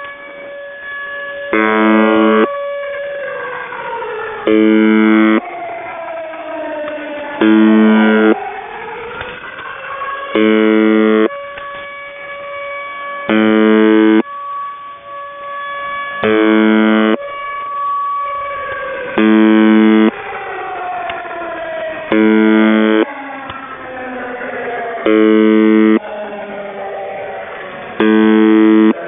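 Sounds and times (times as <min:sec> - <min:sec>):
air-raid siren wailing: 0:00.0 - 0:29.0
harsh radio buzz: 0:01.6 - 0:02.5, 0:04.5 - 0:05.4, 0:07.4 - 0:08.4, 0:10.4 - 0:11.3, 0:13.3 - 0:14.2, 0:16.2 - 0:17.2, 0:19.2 - 0:20.1, 0:22.1 - 0:23.1, 0:25.1 - 0:26.0, 0:28.0 - 0:29.0.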